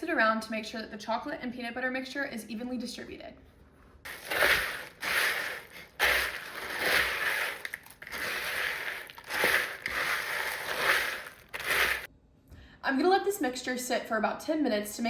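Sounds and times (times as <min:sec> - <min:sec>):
spoon stirring crunchy cereal: 0:04.1 - 0:12.1.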